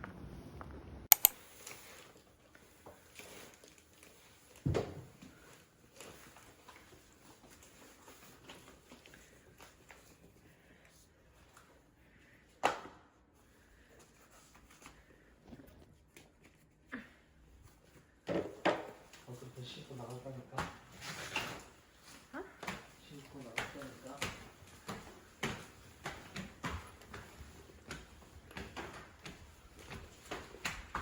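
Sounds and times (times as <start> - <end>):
sharp clicks of objects handled: 1.1 - 1.8.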